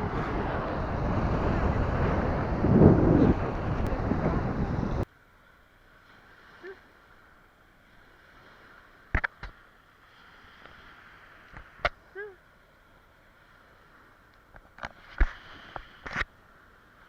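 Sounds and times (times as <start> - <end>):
wind buffeting microphone: 0.0 - 5.1.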